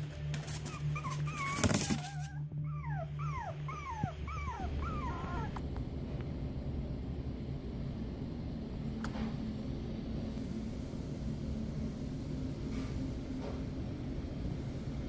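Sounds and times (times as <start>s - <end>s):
puppy whimpering: 0.5s - 5.6s.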